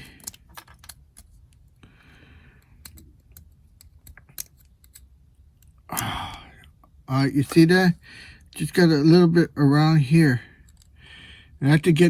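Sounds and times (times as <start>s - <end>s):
small clicks and ticks: 2.6s - 7.6s.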